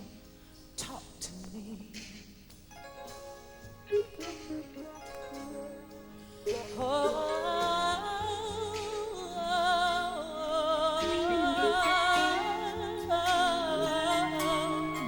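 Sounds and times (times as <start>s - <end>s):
soft instrumental accompaniment: 0.0s - 15.0s
woman singing wordless vibrato: 3.9s - 15.0s.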